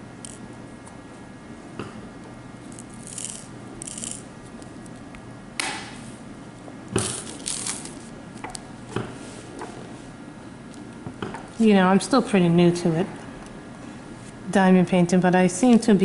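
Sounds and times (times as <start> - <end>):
small resin beads rattling: 2.7 - 4.3.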